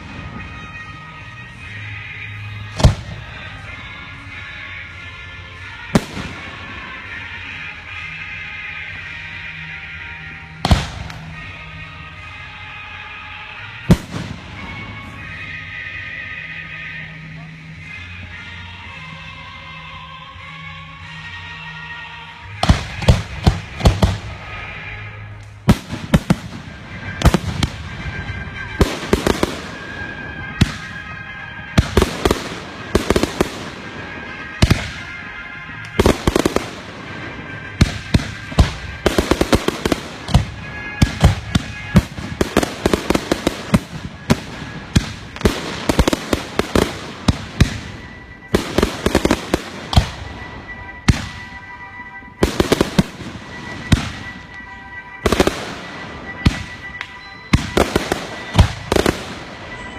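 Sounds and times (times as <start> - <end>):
fireworks bangs and crackles: 0.0 - 3.8, 5.6 - 8.2, 10.4 - 12.3, 13.7 - 16.0, 22.4 - 59.9
music playing: 0.0 - 59.9.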